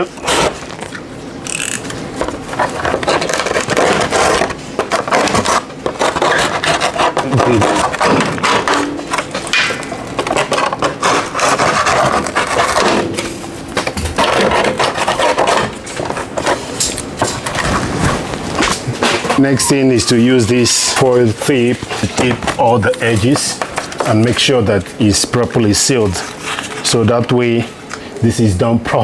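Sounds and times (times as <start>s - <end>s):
panel being cut by hand: 0.0s - 0.8s, 1.5s - 24.3s.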